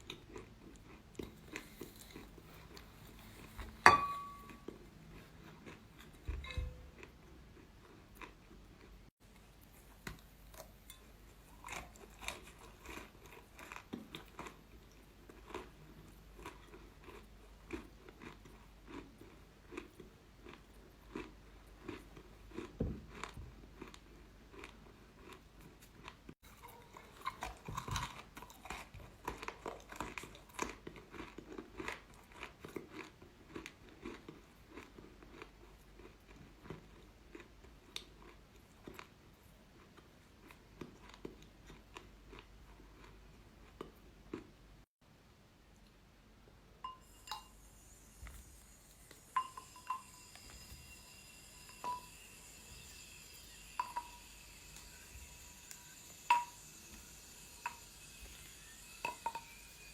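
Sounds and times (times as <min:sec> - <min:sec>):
chewing crunchy chalk: 0:00.0 - 0:03.8.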